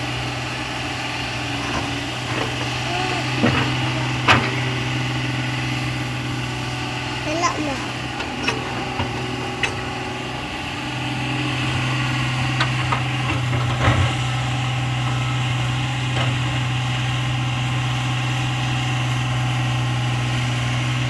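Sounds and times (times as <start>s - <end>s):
excavator diesel engine running: 0.0s - 21.0s
metal clanks: 8.2s - 10.0s.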